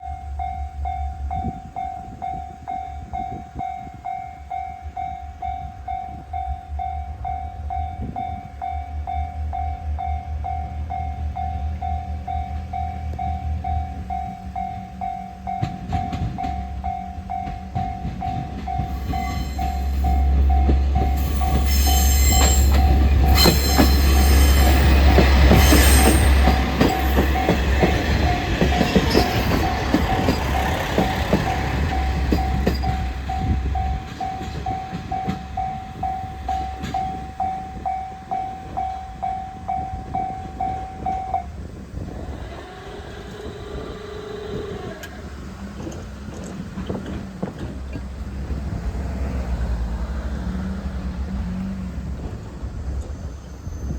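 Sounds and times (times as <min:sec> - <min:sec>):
train rumbling past: 0:00.0 - 0:53.9
train wheel clacks: 0:10.7 - 0:53.3.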